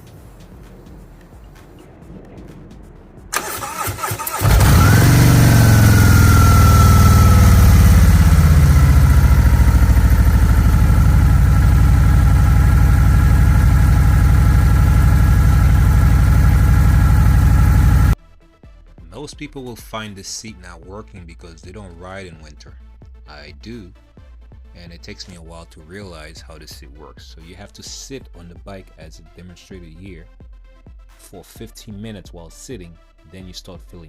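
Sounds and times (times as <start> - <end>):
electric starter cranking: 3.4 - 18.2
motorcycle engine idling: 3.4 - 18.2.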